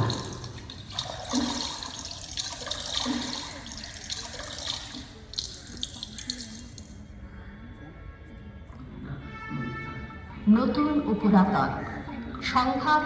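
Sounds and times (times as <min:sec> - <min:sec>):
water splashing and sloshing: 0:00.0 - 0:06.9.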